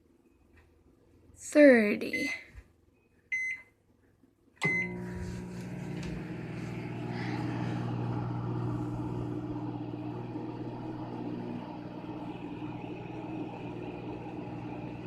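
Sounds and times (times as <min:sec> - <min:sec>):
microwave oven humming: 0:04.6 - 0:15.0.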